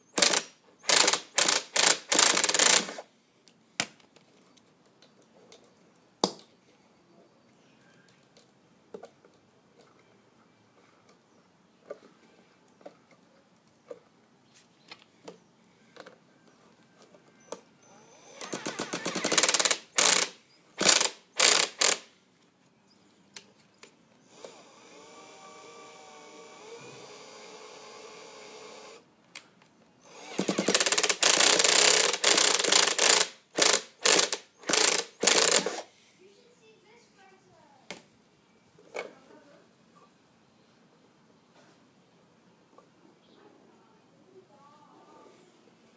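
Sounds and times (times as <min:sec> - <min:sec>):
small engine cranking over: 0:00.0 - 0:03.0, 0:18.0 - 0:22.1, 0:30.1 - 0:35.9.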